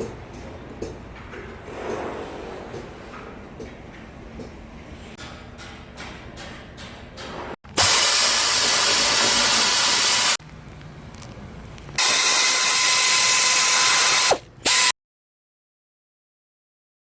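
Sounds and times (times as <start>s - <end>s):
power tool running: 7.7s - 10.4s, 12.0s - 15.0s
power tool whine: 7.8s - 10.4s, 12.0s - 14.9s.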